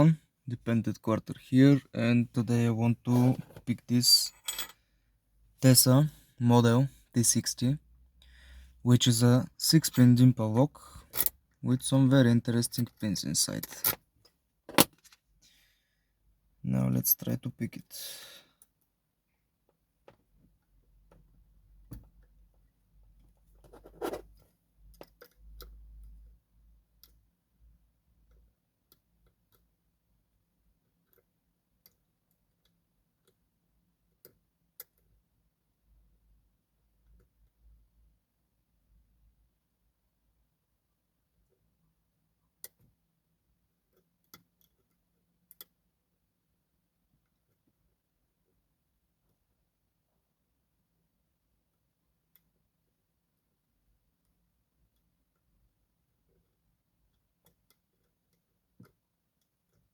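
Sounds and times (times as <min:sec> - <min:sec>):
lock picking clicks and scratches: 0:14.7 - 0:15.2.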